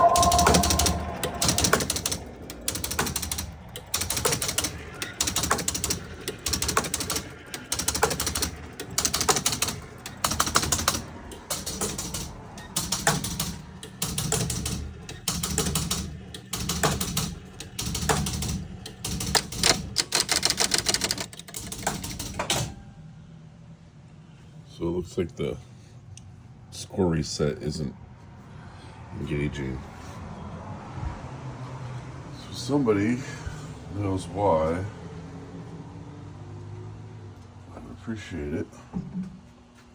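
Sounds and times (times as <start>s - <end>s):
pinball relays clicking rapidly: 0.0s - 22.8s.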